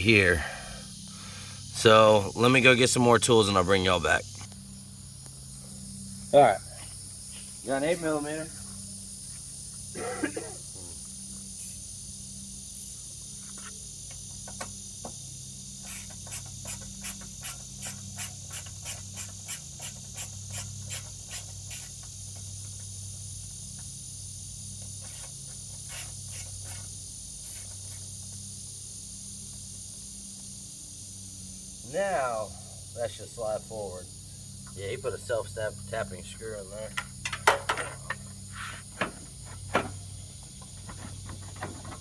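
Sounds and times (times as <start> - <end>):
ratchet wrench clicking: 15.8 - 22.2, 25.0 - 28.1.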